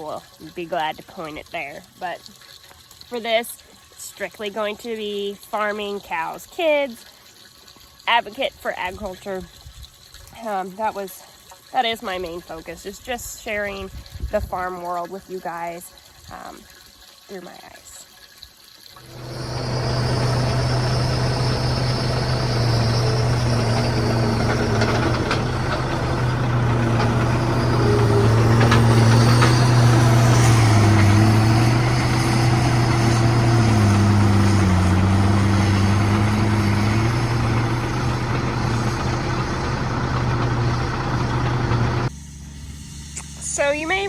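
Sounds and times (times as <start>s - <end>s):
large vehicle engine running: 19.0s - 44.0s.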